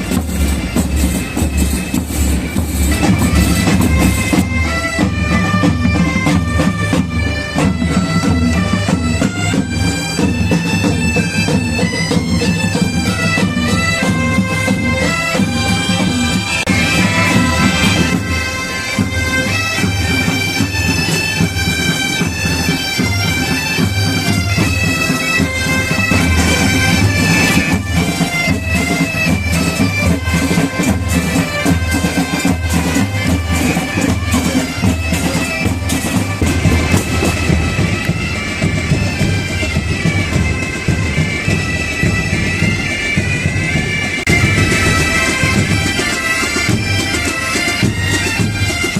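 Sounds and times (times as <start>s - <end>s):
massed bagpipes playing: 0.0s - 48.9s
sharp strikes: 15.5s - 19.2s.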